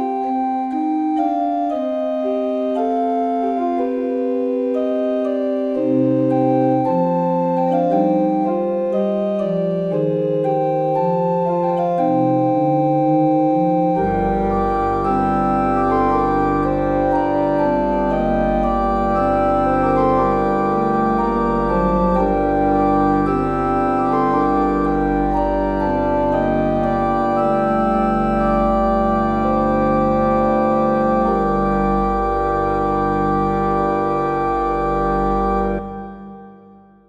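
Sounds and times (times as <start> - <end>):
organ-like keyboard music: 0.0 - 37.0.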